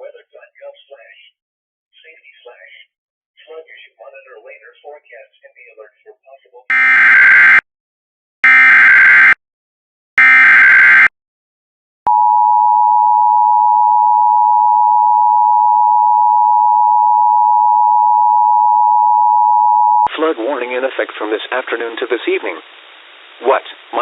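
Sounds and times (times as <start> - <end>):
steady dual tone alert signal: 6.7 - 7.6, 8.4 - 9.4, 10.2 - 11.1.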